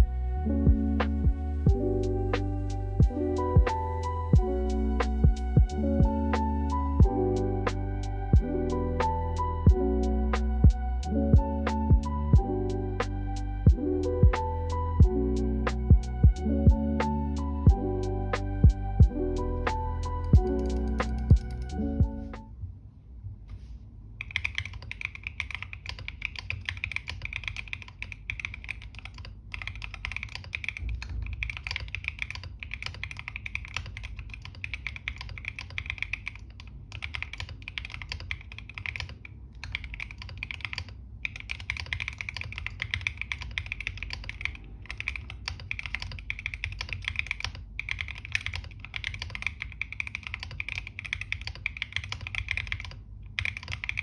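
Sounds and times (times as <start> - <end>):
low steady hum: 0.0 - 26.4
mechanical keyboard typing: 20.0 - 21.8, 24.2 - 54.0.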